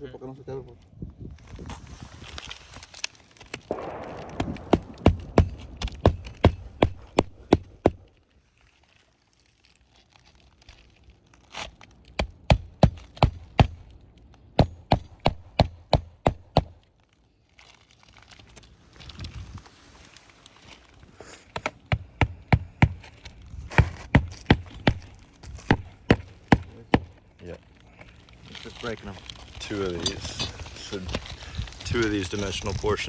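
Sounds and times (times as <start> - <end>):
scraping rustle: 0.5 - 4.6, 17.3 - 21.6, 26.3 - 33.0
hammer blows on shingle roof: 3.7 - 8.1, 12.2 - 13.9, 14.6 - 16.8, 21.5 - 27.2.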